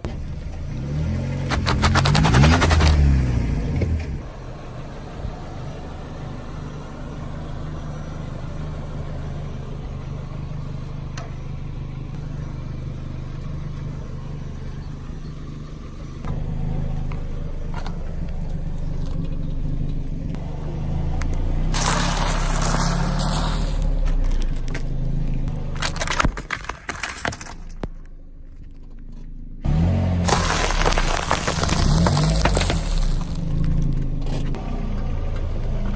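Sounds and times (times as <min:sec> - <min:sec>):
car engine running: 0:00.0 - 0:35.9
objects crushed under tyres: 0:01.4 - 0:04.3, 0:17.0 - 0:34.6
sharp cracks: 0:01.5 - 0:03.1, 0:30.2 - 0:34.4.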